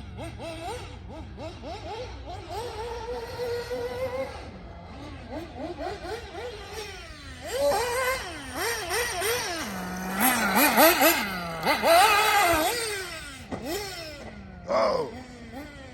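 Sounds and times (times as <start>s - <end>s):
remote-control car motor revving: 0.0s - 15.9s.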